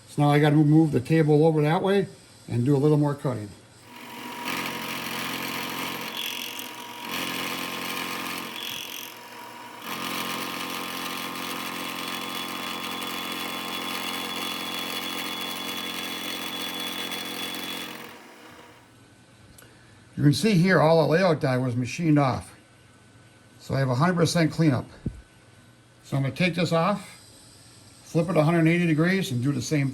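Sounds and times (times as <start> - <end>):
milling machine cutting metal: 3.8 - 18.8.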